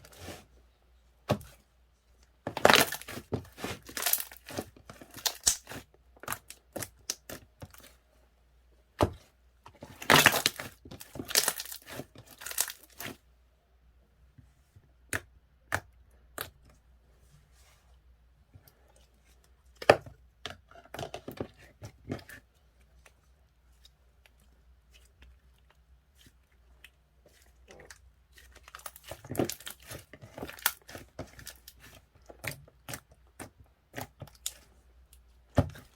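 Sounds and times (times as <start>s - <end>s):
wrapping crinkling and tearing: 2.6s - 5.8s, 10.0s - 13.2s.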